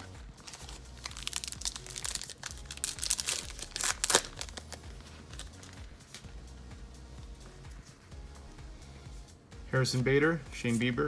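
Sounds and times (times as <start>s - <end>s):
wrapper tearing and crinkling: 0.4s - 5.8s.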